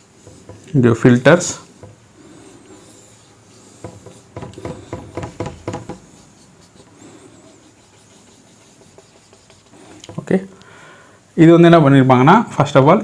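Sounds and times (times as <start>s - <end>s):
pen scratching on paper: 0.0s - 10.3s.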